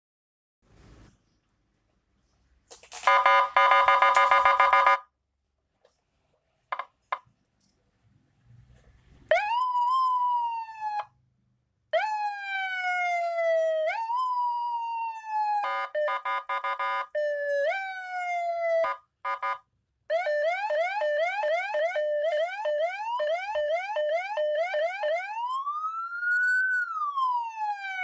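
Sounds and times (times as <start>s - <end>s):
electronic siren: 3.1s - 5.0s, 9.3s - 11.1s, 12.0s - 28.0s.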